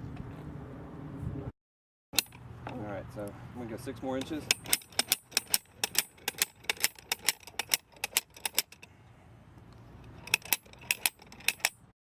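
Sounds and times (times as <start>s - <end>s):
hammer probe metal clanks: 4.1s - 8.9s.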